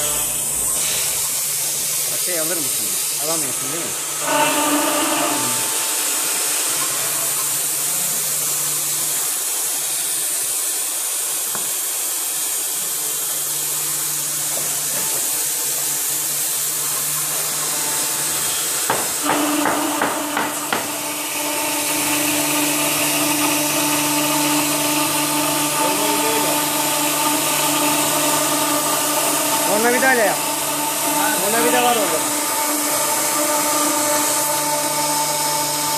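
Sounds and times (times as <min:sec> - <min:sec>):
cnc router airy hiss: 0:00.0 - 0:35.9
sharp knocks: 0:18.9 - 0:21.0.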